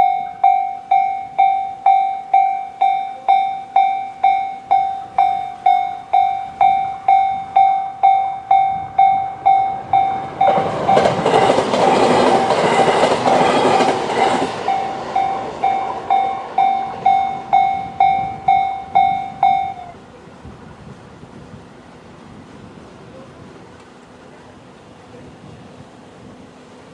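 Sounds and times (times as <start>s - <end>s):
level crossing warning bell: 0.0s - 20.0s
train running noise: 0.0s - 26.9s.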